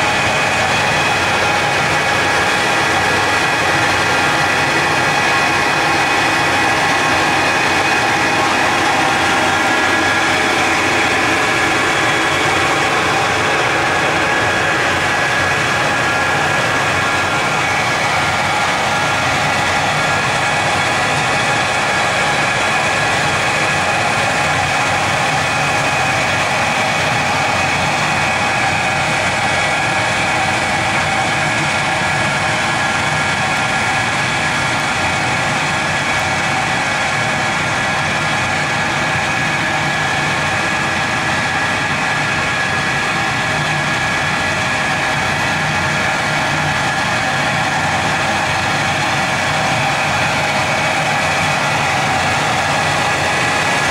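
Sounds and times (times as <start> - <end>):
machine humming steadily: 0.0 - 53.9.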